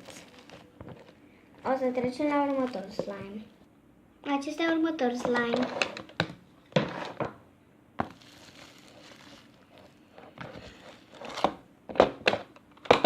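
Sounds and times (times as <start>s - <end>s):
slime crackling: 0.0s - 3.5s, 8.0s - 11.4s.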